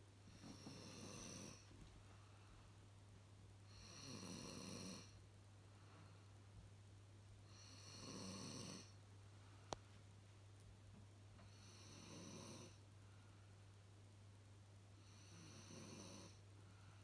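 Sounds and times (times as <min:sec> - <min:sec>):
snoring: 0:00.3 - 0:01.7, 0:03.7 - 0:05.2, 0:07.5 - 0:09.0, 0:11.4 - 0:12.8, 0:15.0 - 0:16.4.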